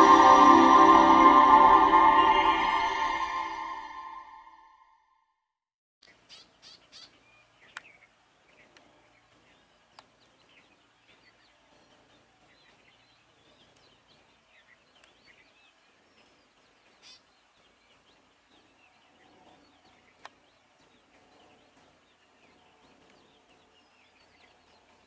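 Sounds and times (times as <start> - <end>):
faint pulsing high tone: 0.0 - 4.8.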